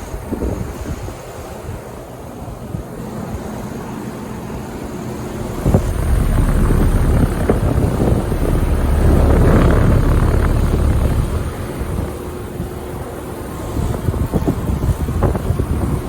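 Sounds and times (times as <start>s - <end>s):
heat pump humming: 4.9s - 15.4s.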